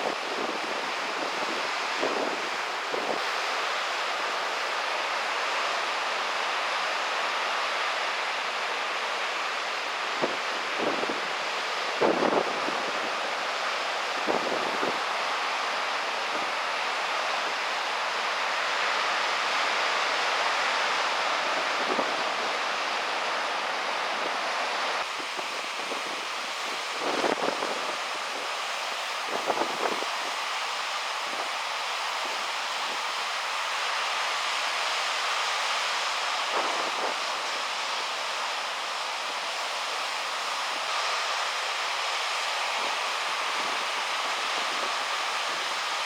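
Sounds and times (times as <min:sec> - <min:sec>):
ocean surf: 0:00.0 - 0:46.0
wind on microphone: 0:12.0 - 0:13.2, 0:14.2 - 0:15.0, 0:25.0 - 0:28.5, 0:29.2 - 0:30.4, 0:36.5 - 0:37.3.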